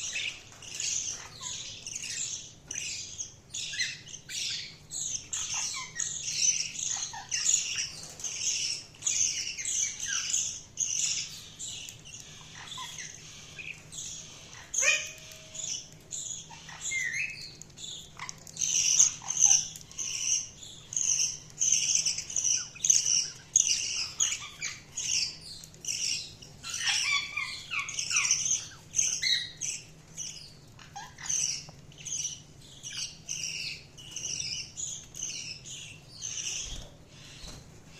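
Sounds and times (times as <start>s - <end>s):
budgerigars chirping and warbling: 0.0s - 37.9s
budgerigar squawks: 14.6s - 15.5s.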